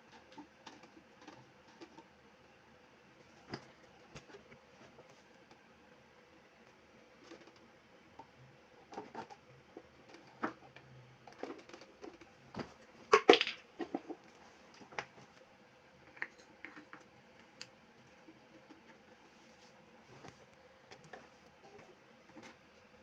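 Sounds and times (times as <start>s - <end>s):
fan parts clicking and knocking: 0.0s - 2.1s, 8.2s - 15.2s.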